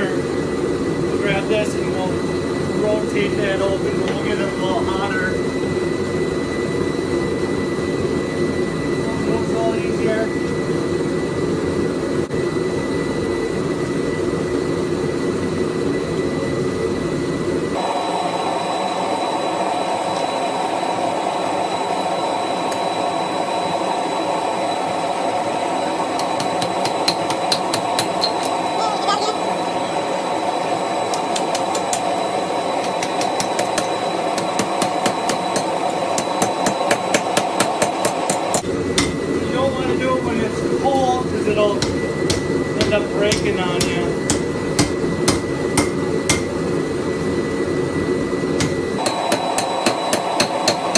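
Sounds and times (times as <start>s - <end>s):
hammer blows on hot steel: 31.1s - 39.7s, 40.9s - 46.7s, 48.6s - 50.9s.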